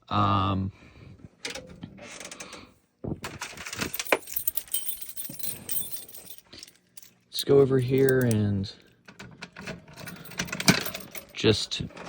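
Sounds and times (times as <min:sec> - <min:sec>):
small hard parts clicking and rattling: 0:03.3 - 0:09.3, 0:10.0 - 0:11.5.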